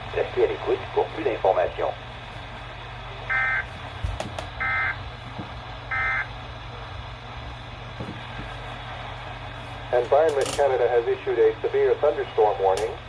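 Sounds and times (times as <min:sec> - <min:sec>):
radio hiss and hum: 0:00.0 - 0:13.0
digital data tone bursts: 0:03.3 - 0:03.6, 0:05.9 - 0:06.3.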